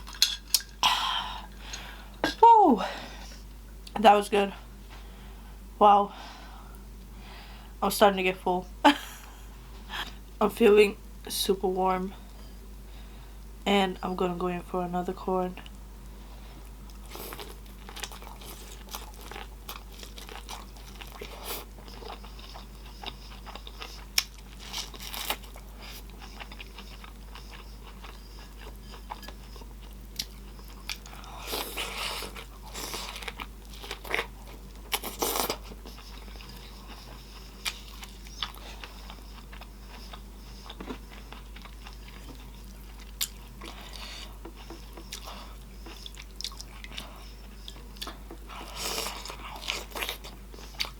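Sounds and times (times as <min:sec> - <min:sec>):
wet chewing and lip smacking: 0:16.8 - 0:50.9.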